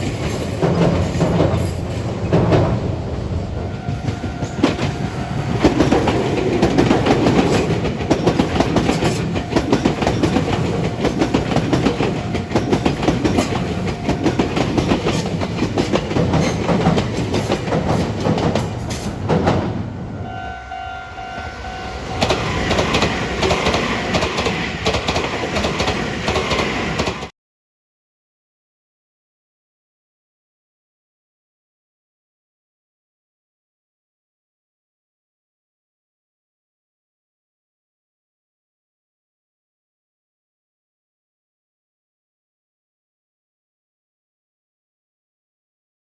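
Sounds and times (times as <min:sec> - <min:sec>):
wheels clattering over rail joints: 0:00.0 - 0:20.0, 0:22.0 - 0:27.3
electric train running: 0:03.6 - 0:27.3
short steady tone: 0:20.1 - 0:23.7.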